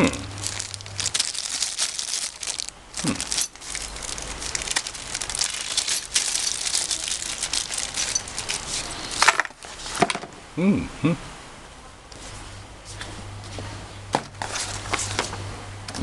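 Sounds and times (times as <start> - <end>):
packaging crinkling: 0.0 - 10.0.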